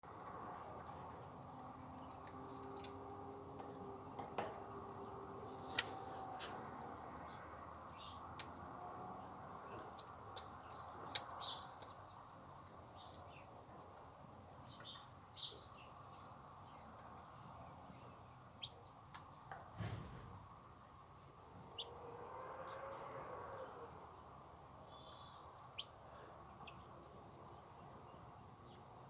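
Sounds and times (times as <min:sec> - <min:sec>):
chicks peeping: 0:14.7 - 0:19.5, 0:21.6 - 0:29.0
brief low thump: 0:19.8 - 0:20.4.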